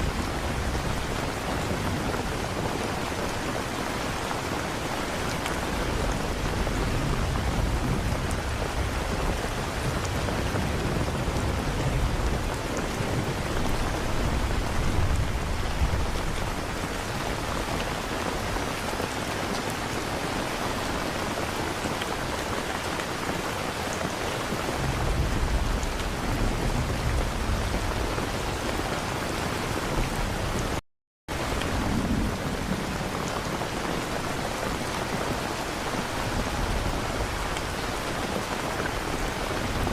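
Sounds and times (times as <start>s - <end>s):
heavy rain: 0.0s - 39.9s
low rolling thunder: 5.8s - 16.8s, 24.8s - 28.8s, 31.4s - 34.8s.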